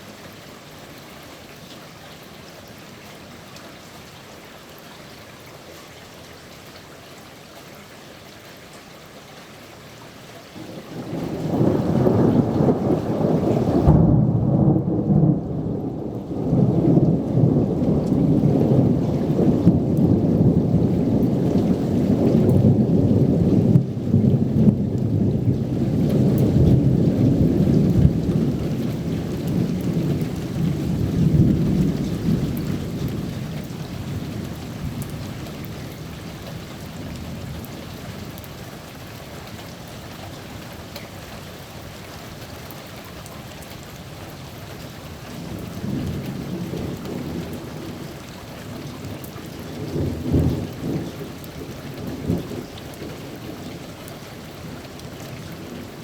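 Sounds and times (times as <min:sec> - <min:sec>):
steady rain: 0:00.0 - 0:56.0
thunder rumbling: 0:10.6 - 0:38.3, 0:45.3 - 0:53.8.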